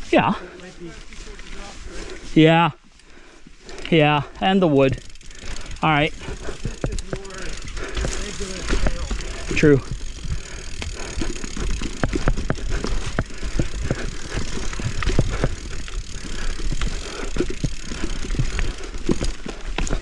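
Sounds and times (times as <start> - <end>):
tyres rumbling on dirt trail: 0.0 - 20.0
bike knocks and rattles: 4.9 - 20.0.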